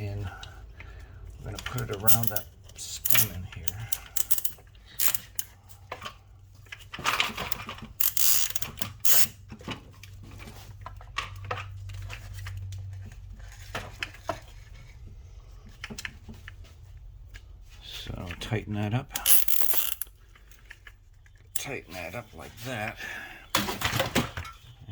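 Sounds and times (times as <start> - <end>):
plastic clicking and scraping: 1.5 - 15.0.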